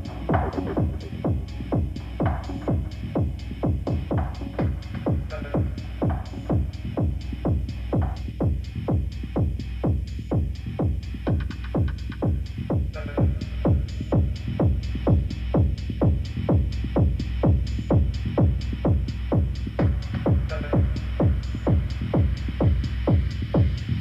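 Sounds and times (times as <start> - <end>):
techno music: 0.0 - 24.0.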